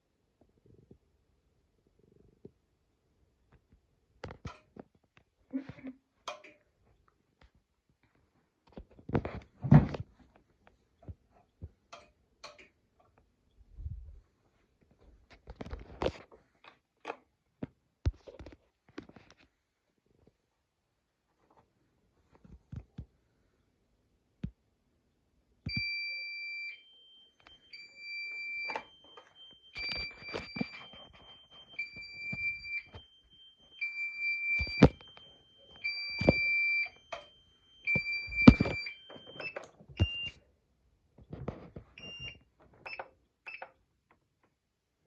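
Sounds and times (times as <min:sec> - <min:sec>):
short beeps: 0:25.7 - 0:40.4
two-tone fire alarm: 0:25.7 - 0:40.4.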